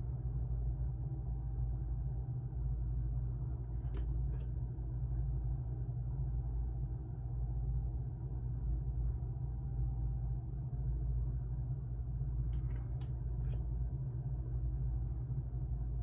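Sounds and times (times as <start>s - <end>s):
low hum and rumble: 0.0s - 16.0s.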